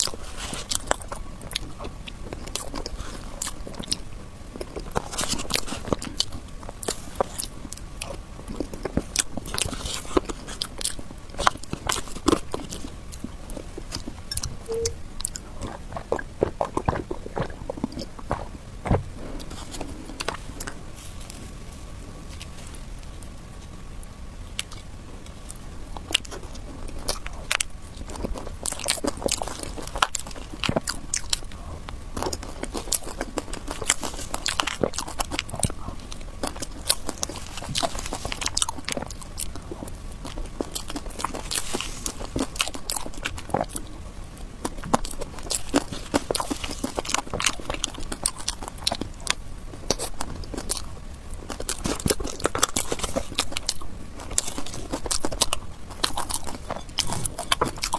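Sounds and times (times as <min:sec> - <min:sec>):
wet chewing: 0:00.0 - 0:21.6, 0:24.5 - 0:57.9
mouth clicks and smacks: 0:14.0 - 0:20.8.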